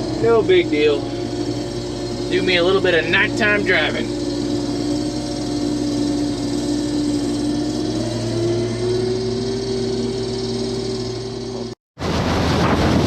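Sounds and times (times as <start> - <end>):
combine diesel engine humming: 0.0 - 13.0.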